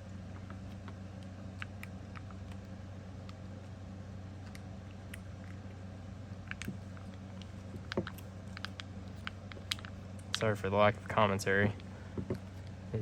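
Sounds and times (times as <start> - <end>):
low electrical hum: 0.0 - 13.0
light clicks and taps of small objects: 0.3 - 3.8, 6.4 - 10.6.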